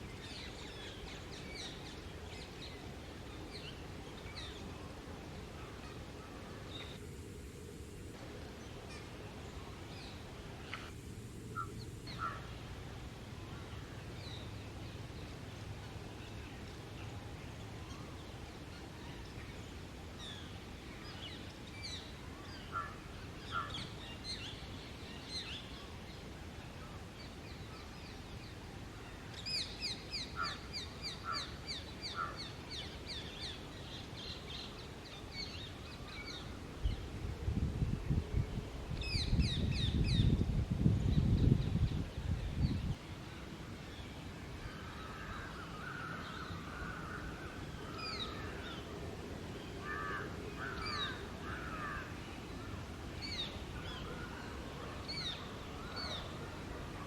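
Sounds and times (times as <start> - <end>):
outdoor background noise: 0.0 - 57.0
birds calling: 49.8 - 52.1.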